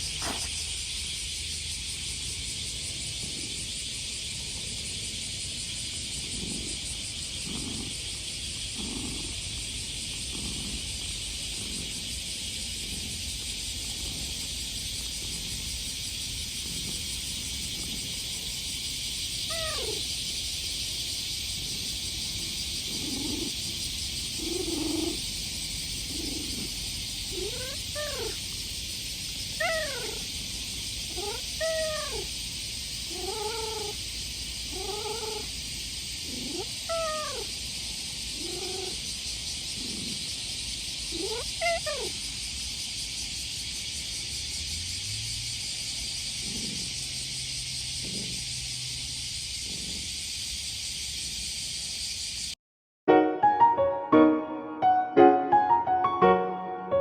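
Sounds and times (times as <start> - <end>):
cicadas droning: 0.0 - 52.6
cat meowing: 19.5 - 20.1, 27.3 - 28.4, 29.6 - 30.3, 31.1 - 32.3, 33.1 - 34.0, 34.7 - 35.5, 36.4 - 37.5, 41.2 - 42.2.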